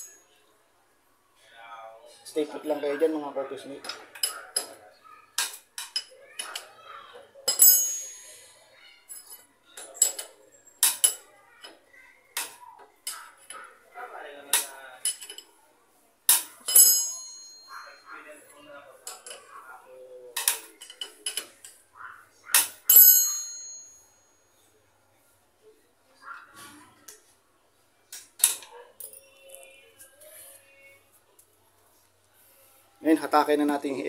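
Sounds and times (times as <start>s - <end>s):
metal tools striking wheel hardware: 7.5s - 8.3s, 16.3s - 17.8s, 22.6s - 24.0s.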